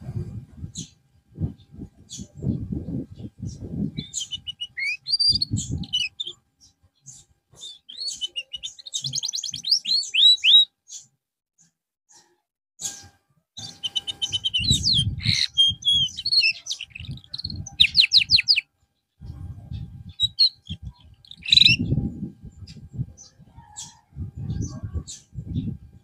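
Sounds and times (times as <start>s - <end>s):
canary singing: 3.2s - 11.1s, 13.6s - 18.7s, 19.8s - 25.8s.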